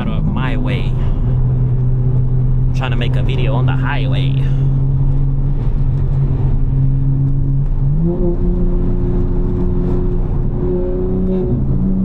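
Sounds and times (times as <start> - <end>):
car engine drone: 0.0 - 12.0.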